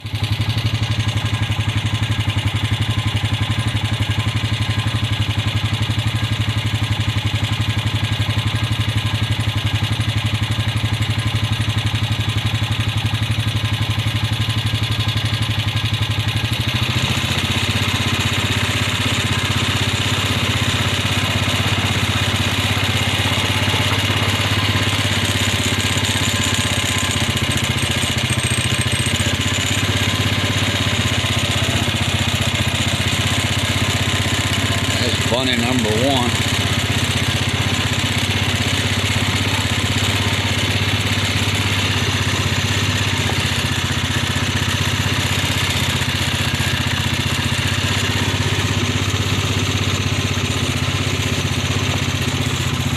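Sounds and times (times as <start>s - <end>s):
small engine running: 0.0s - 52.9s.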